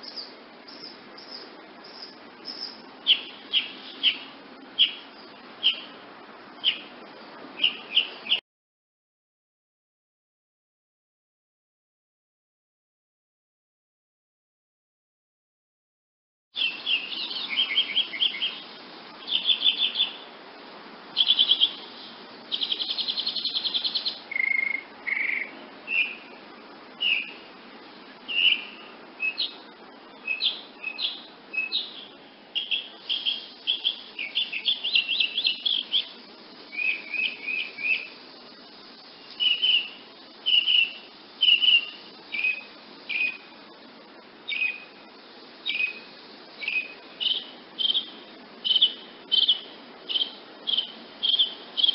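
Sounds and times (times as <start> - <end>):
hummingbird chirping: 0.0 - 6.0, 16.6 - 20.3, 21.2 - 26.4, 27.0 - 27.5, 28.2 - 43.6, 44.5 - 51.9.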